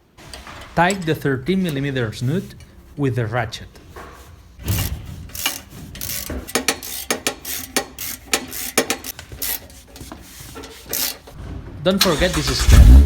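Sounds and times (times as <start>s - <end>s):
ratchet wrench clicking: 4.8s - 9.6s, 10.9s - 11.3s.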